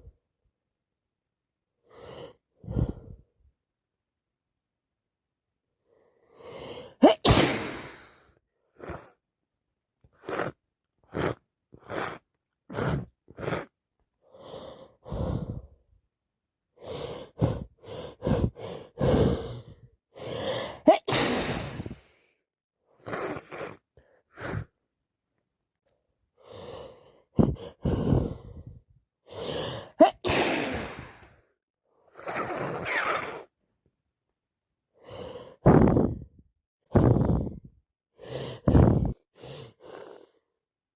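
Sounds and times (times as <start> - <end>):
person sneezing: 7.0 - 8.2, 20.7 - 22.0, 30.0 - 31.2
sharp catches of breath: 29.4 - 31.5.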